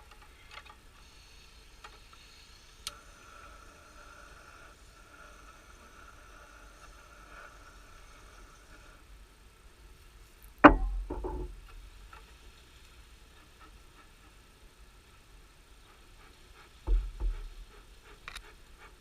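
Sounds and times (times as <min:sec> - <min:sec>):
wooden knocks: 0:10.6 - 0:11.8, 0:16.9 - 0:17.5.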